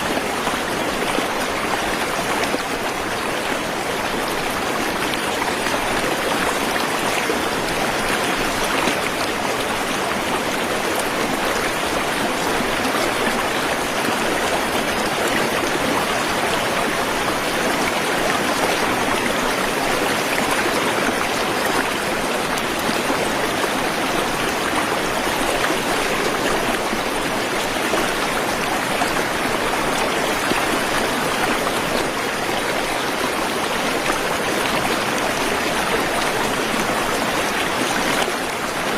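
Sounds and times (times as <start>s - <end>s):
waterfall rushing and splashing: 0.0s - 38.9s.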